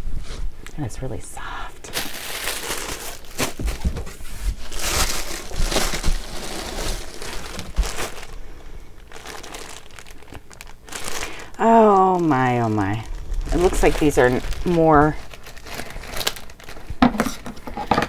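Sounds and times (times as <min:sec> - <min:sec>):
plastic packaging crinkling: 0:01.8 - 0:18.0.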